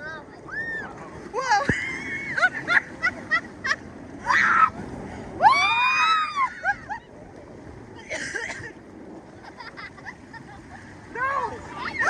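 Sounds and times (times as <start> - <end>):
rushing water: 0.0 - 12.0
people shrieking and whooping: 0.5 - 1.0, 4.2 - 4.8, 5.4 - 7.1.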